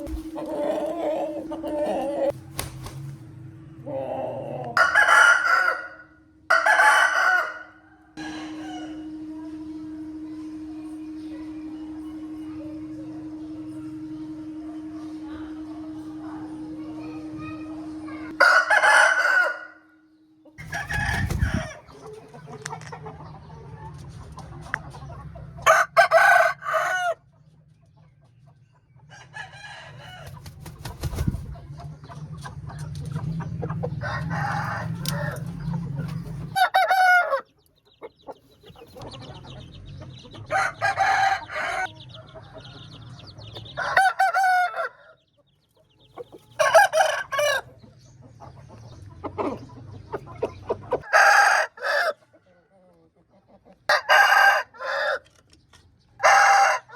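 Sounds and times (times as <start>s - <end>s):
roosters crowing: 0.0s - 2.7s, 3.6s - 10.9s, 17.4s - 20.0s, 20.6s - 22.9s, 25.6s - 27.3s, 29.1s - 31.2s, 33.7s - 37.6s, 40.4s - 45.2s, 46.4s - 47.8s, 51.0s - 52.3s, 53.8s - 55.3s, 56.2s - 56.9s
low hum: 8.0s - 18.4s.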